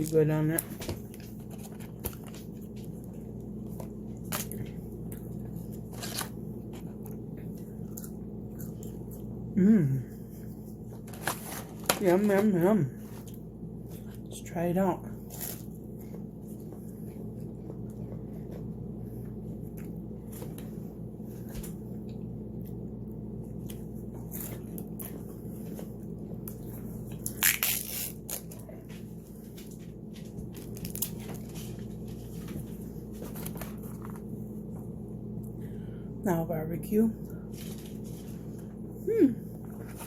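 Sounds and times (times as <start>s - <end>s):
low hum: 0.0s - 40.0s
person chewing food: 1.0s - 11.4s, 15.2s - 35.6s.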